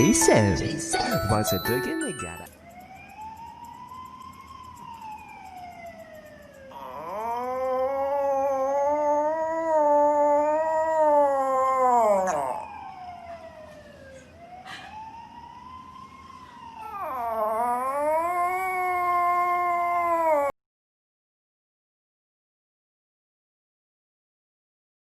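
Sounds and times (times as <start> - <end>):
dog howling: 6.7 - 13.1, 16.8 - 20.6.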